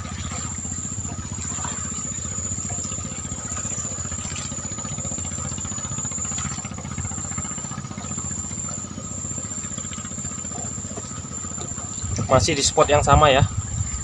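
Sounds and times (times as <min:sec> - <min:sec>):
high-pitched whine: 0:00.0 - 0:14.0
small engine throbbing: 0:00.0 - 0:14.0.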